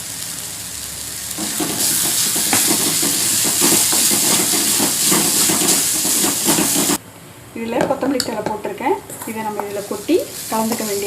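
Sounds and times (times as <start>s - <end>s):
onion frying in hot oil: 0.0s - 7.0s, 8.1s - 11.0s
spatula scraping pan: 1.4s - 7.0s, 9.0s - 11.0s.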